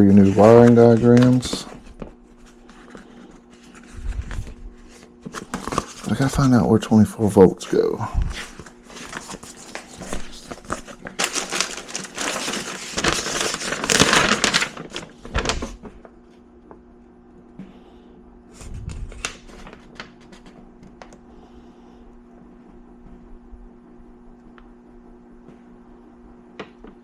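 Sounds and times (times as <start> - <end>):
paper crinkling: 0.0 - 6.5, 8.2 - 16.1
faint steady hum: 0.0 - 27.0.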